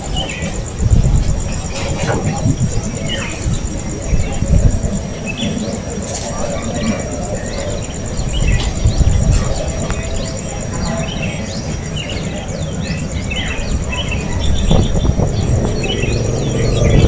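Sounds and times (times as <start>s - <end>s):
birds chirping: 0.0s - 17.0s
pulsing insect trill: 0.0s - 17.0s
low rumble: 13.2s - 17.0s.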